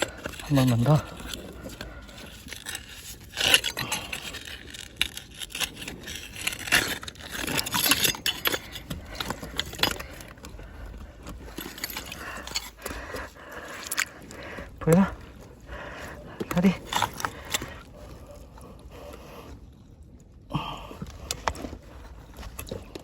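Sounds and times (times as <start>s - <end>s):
digging in wet mud: 0.0s - 19.7s.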